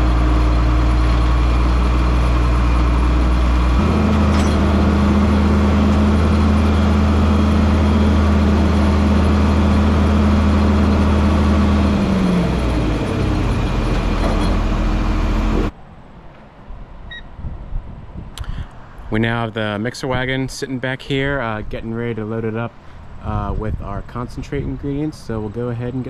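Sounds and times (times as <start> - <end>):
tractor engine running: 0.0 - 15.8.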